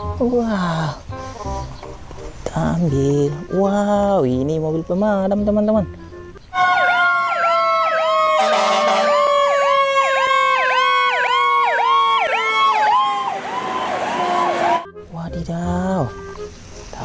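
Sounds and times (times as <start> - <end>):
fire engine siren yelping: 6.5 - 14.9.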